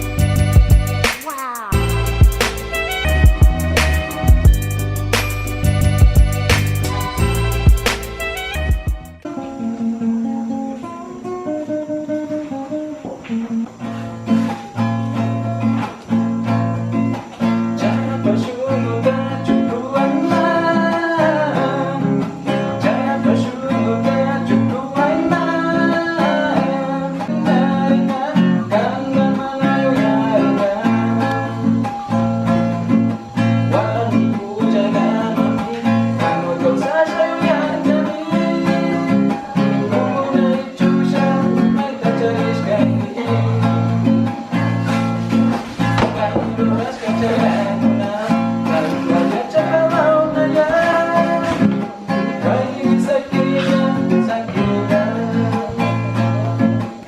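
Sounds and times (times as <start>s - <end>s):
strummed acoustic guitar: 0.0s - 57.0s
person singing: 0.6s - 4.4s, 45.8s - 57.0s.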